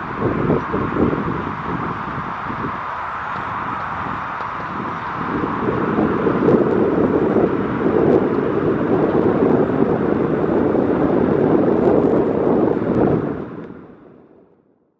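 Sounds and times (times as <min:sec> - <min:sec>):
jet engines roaring at takeoff: 0:00.0 - 0:14.7.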